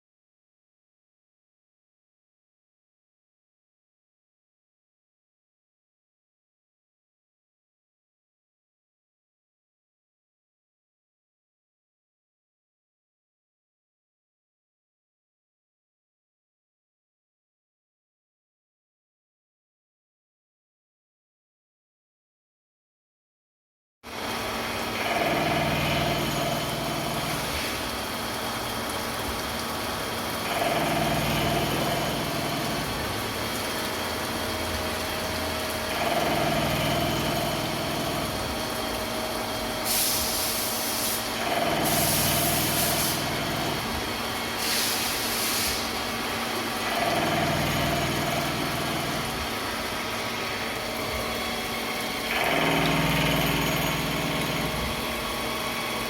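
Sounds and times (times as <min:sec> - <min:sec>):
milling machine cutting: 0:24.3 - 0:40.3, 0:41.0 - 0:56.0
short hissing bursts: 0:39.9 - 0:41.2, 0:44.6 - 0:45.9.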